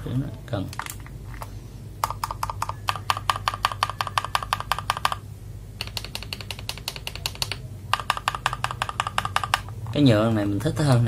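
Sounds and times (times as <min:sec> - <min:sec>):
mechanical keyboard typing: 0:02.0 - 0:05.2, 0:05.8 - 0:11.0.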